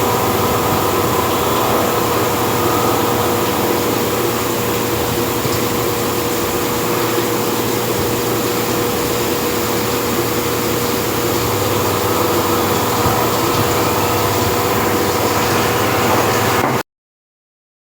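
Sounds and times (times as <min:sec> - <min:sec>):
low hum: 0:00.0 - 0:07.8
cnc machine whining: 0:00.0 - 0:16.8.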